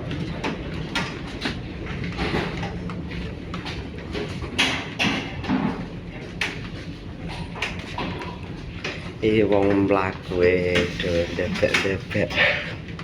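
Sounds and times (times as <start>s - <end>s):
ferry engines droning: 0.0s - 13.0s
sharp knocks and clatters: 3.5s - 6.6s.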